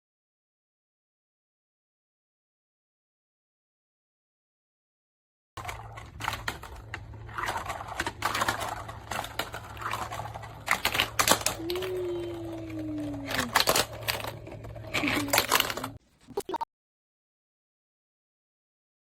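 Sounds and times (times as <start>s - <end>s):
plastic tiles and marbles clicking: 5.6s - 16.6s.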